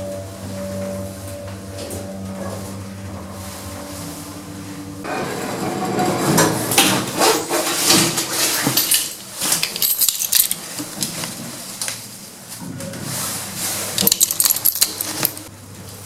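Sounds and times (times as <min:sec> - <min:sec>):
metallic clattering and clinking: 0:06.3 - 0:11.3, 0:14.0 - 0:15.5.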